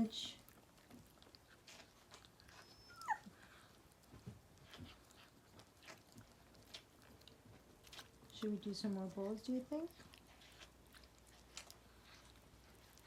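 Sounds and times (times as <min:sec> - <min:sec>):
puppy whining: 0:01.1 - 0:03.7.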